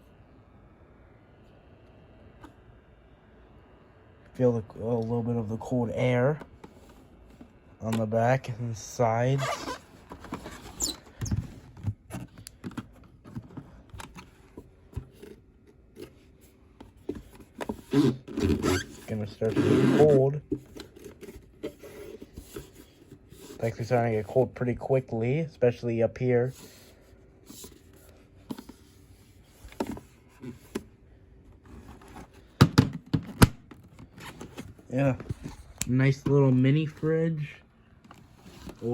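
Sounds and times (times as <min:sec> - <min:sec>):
mini fridge humming: 0:00.0 - 0:23.8
hands handling objects: 0:09.4 - 0:23.8, 0:26.5 - 0:37.1, 0:37.9 - 0:38.9.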